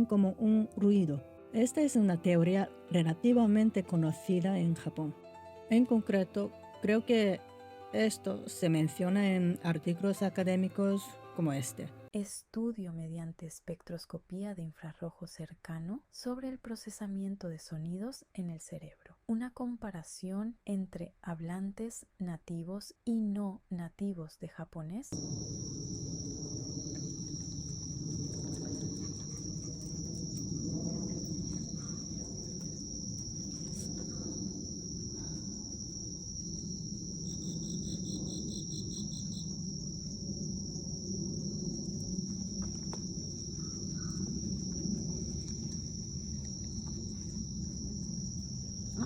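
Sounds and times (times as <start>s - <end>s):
crickets trilling: 25.2s - 49.0s
insect rapid pulsed chirping: 25.2s - 49.0s
low background hum: 25.2s - 49.0s.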